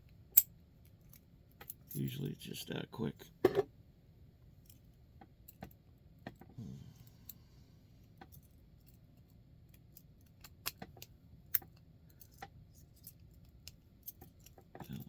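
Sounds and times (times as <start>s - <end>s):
keys jingling in a padlock: 11.5s - 15.0s.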